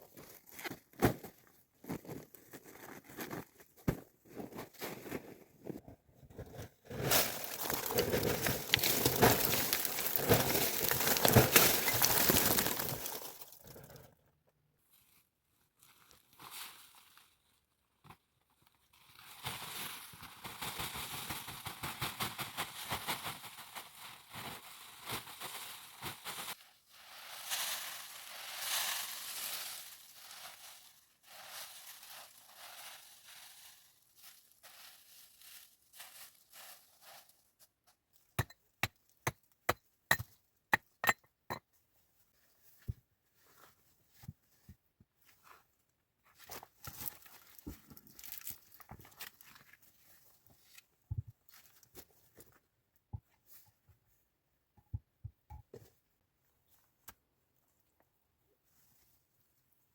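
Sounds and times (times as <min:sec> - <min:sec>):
rustling and crunching: 0:00.1 - 0:14.0, 0:18.8 - 0:37.6, 0:45.2 - 0:52.6.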